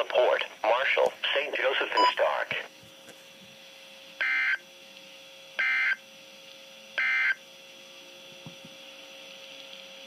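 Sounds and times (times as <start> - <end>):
radio hiss and hum: 0.0 - 6.7.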